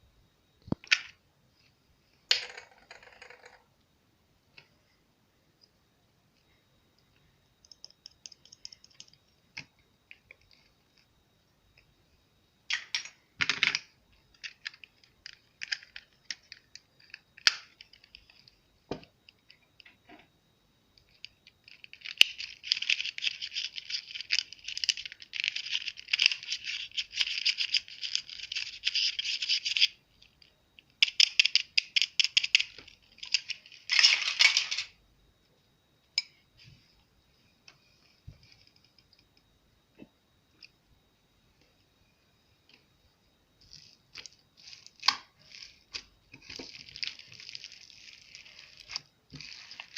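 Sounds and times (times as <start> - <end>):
slime crackling and popping: 44.1 - 49.9.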